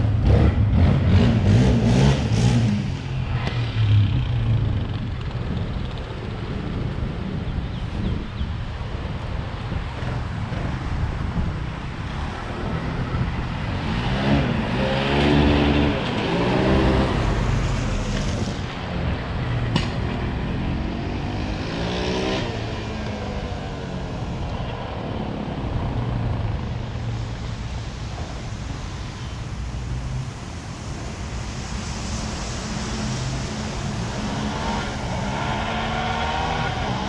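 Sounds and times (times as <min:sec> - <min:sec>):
atv engine revving: 0:00.0 - 0:06.0, 0:13.7 - 0:18.6.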